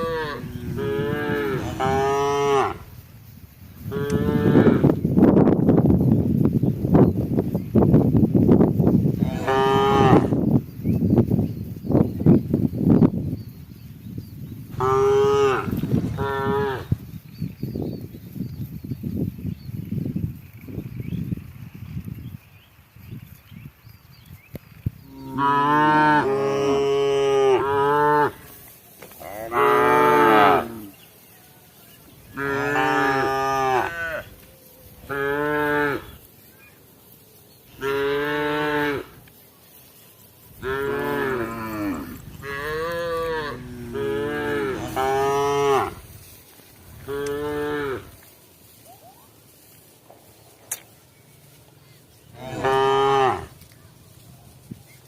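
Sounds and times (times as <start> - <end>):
cattle mooing: 0.0 - 2.8, 3.9 - 4.9, 25.1 - 28.4, 29.2 - 30.9, 32.3 - 34.3, 40.6 - 46.0, 52.4 - 53.5.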